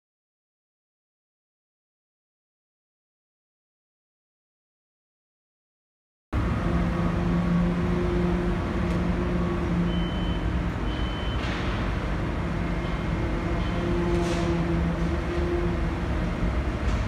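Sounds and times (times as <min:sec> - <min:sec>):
low mechanical rumble with hum: 0:06.4 - 0:17.0.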